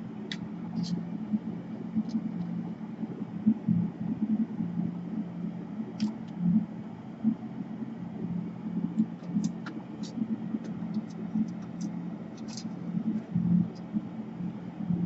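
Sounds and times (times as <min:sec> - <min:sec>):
steady low hum: 0:00.0 - 0:15.0
laptop parts clicking and tapping: 0:09.2 - 0:12.8.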